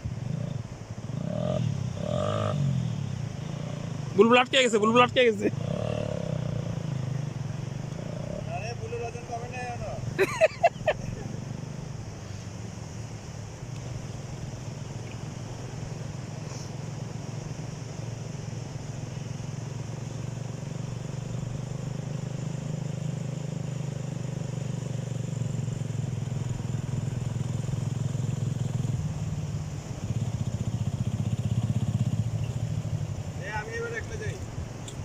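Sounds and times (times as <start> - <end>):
atv engine running: 0.0 - 35.0.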